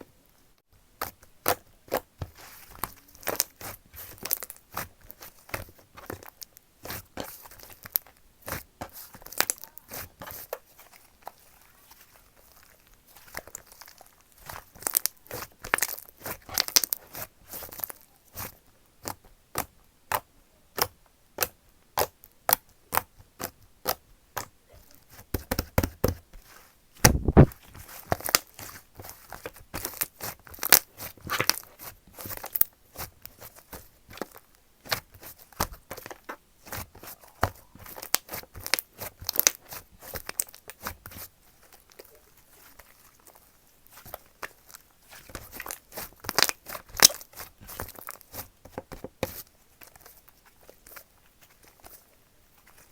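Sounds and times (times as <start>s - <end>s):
slime squeezed by hand: 27.0s - 27.6s.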